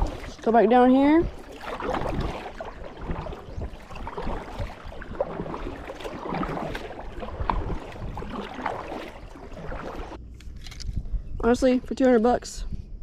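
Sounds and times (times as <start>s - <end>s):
water splashing around kayak: 0.0s - 10.2s.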